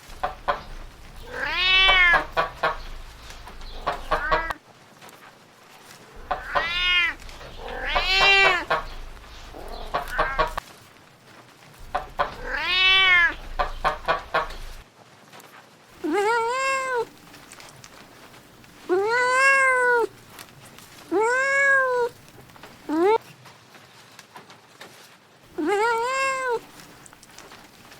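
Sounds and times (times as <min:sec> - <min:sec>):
cat meowing: 0:00.3 - 0:04.6, 0:06.2 - 0:10.6, 0:11.9 - 0:14.8, 0:16.0 - 0:23.2, 0:25.5 - 0:27.9.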